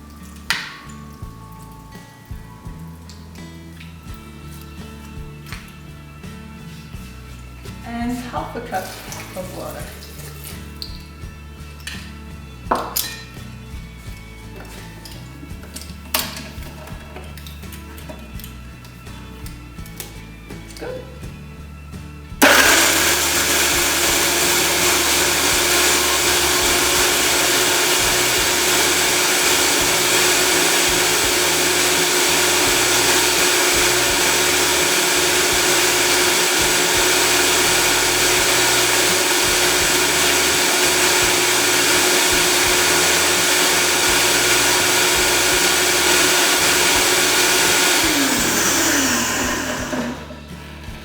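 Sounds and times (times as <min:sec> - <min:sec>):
blender running at high speed: 0:22.4 - 0:50.4.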